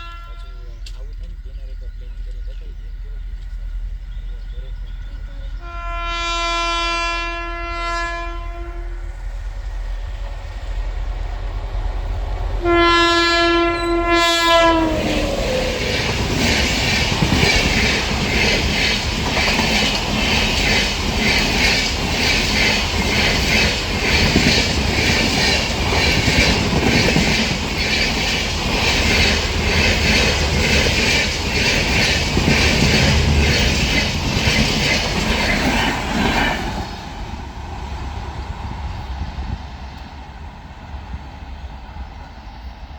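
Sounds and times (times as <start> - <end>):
locomotive horn blasts: 0.0 - 1.0, 5.6 - 9.1, 12.6 - 15.3
train wheels clickety-clack: 14.6 - 37.4.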